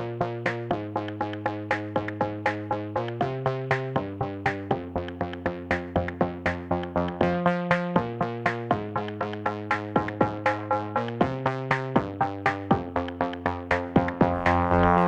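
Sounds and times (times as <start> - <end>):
drum machine beat: 0.0 - 15.0
synthesizer notes: 4.4 - 15.0.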